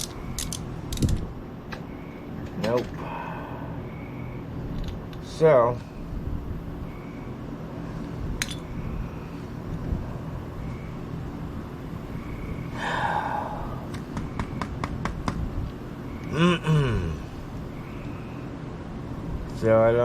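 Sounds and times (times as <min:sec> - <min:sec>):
light metallic clicks of tools: 0:00.0 - 0:01.8, 0:08.4 - 0:08.7
electric fan humming: 0:00.0 - 0:20.0
person sighing: 0:03.0 - 0:03.8, 0:12.8 - 0:13.9, 0:16.3 - 0:17.3.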